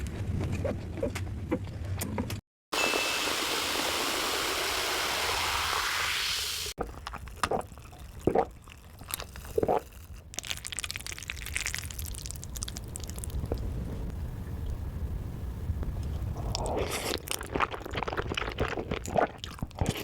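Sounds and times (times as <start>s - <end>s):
watery hiss: 2.8s - 6.8s
slurping and chewing noodles: 6.8s - 13.5s, 16.4s - 20.0s.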